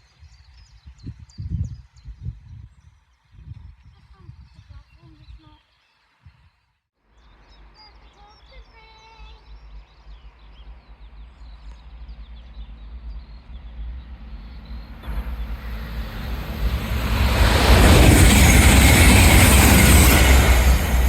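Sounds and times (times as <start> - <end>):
approaching train rumble: 9.2 - 21.0.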